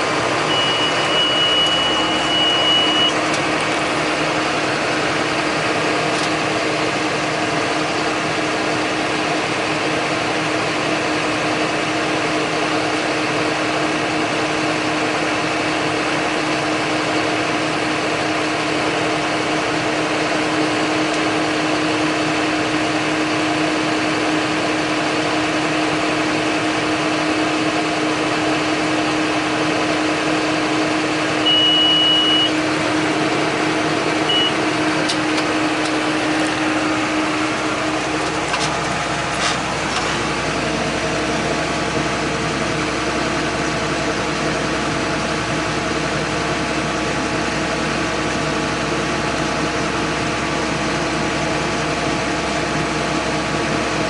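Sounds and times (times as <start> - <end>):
tractor diesel engine running: 0.0 - 54.0
high electronic beep: 0.5 - 3.2, 31.4 - 32.6, 34.2 - 34.6.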